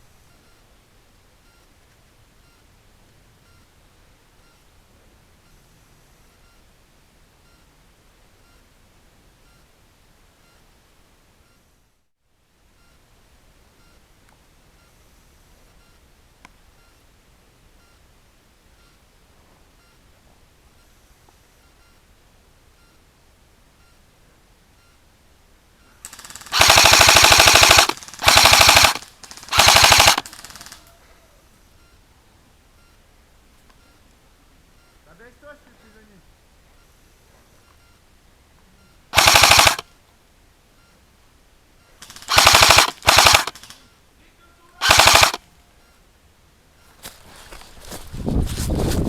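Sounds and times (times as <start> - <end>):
airsoft rifle automatic fire: 26.0 - 30.9, 39.1 - 39.9, 42.0 - 43.8, 44.8 - 45.4.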